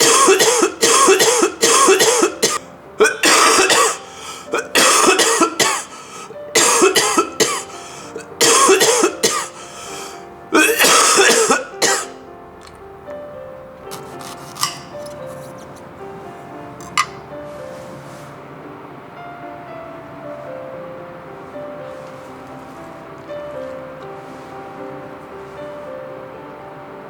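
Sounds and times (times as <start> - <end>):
person coughing violently: 0.0 - 6.0, 6.6 - 9.7, 10.6 - 12.2
soft background music: 0.0 - 27.0.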